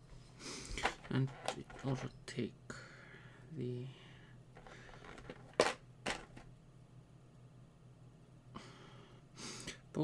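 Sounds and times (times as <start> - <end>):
faint steady hum: 0.0 - 10.0
person breathing in: 2.8 - 5.2, 8.6 - 9.8
plastic parts clicking: 4.6 - 6.5.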